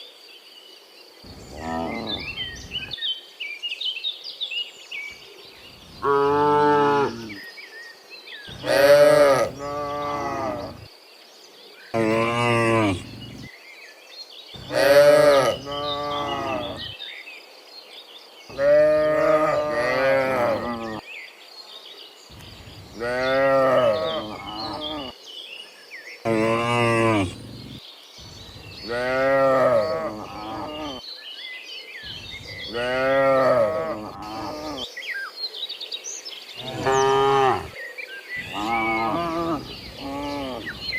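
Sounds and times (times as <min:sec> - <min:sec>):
cows mooing: 0:01.4 - 0:02.5, 0:06.0 - 0:07.4, 0:08.5 - 0:10.8, 0:12.0 - 0:13.5, 0:14.6 - 0:16.9, 0:18.5 - 0:21.0, 0:23.0 - 0:25.1, 0:26.3 - 0:27.8, 0:28.9 - 0:31.0, 0:32.7 - 0:34.8, 0:36.6 - 0:37.8, 0:38.4 - 0:40.8.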